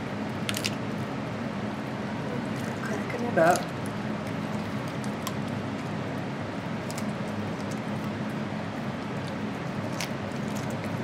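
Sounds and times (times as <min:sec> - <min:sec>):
steady low hum: 0:00.0 - 0:11.0
sharp bone cracks: 0:00.4 - 0:00.8, 0:06.8 - 0:07.8, 0:09.3 - 0:11.0
dog crunching bone: 0:03.4 - 0:06.0, 0:06.8 - 0:08.4, 0:09.0 - 0:11.0.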